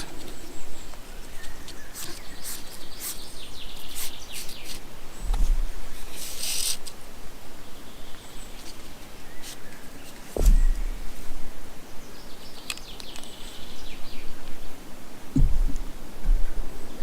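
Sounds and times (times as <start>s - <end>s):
rustling hiss: 0.0s - 17.0s
small birds chirping: 0.0s - 17.0s
low bump: 10.4s - 11.6s, 15.3s - 16.5s.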